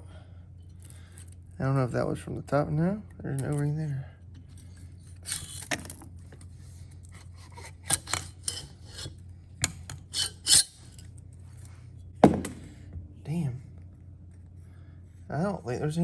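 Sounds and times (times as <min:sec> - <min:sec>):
metal parts scraping and clinking: 0:03.3 - 0:12.1.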